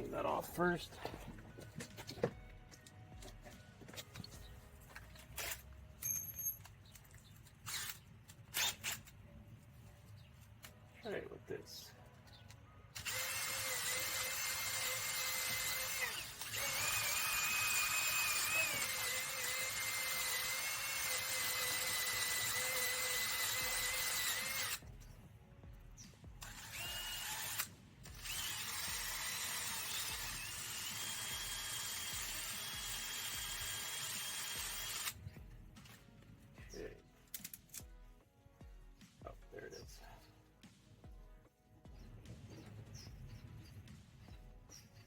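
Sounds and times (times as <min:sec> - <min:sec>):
heat gun fan whining: 0:12.9 - 0:24.8, 0:26.4 - 0:35.2.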